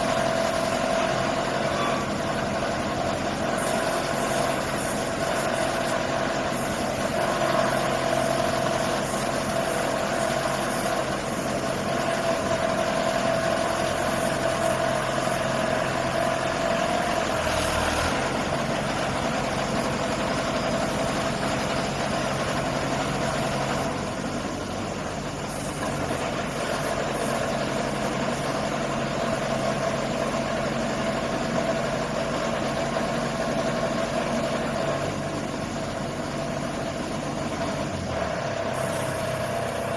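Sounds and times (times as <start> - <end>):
drilling rig engine running: 0.0 - 39.9.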